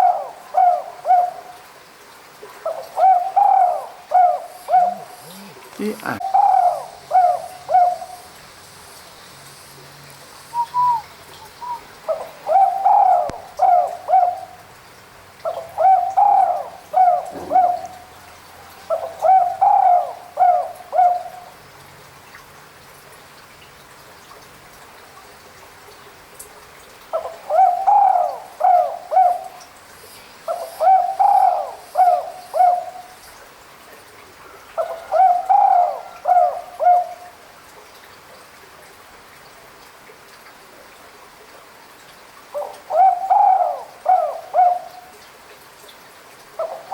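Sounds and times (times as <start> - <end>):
dove cooing: 2.6 - 8.3, 10.6 - 14.6, 15.5 - 21.5, 27.2 - 29.6, 30.4 - 33.1, 34.8 - 37.2, 42.6 - 45.1.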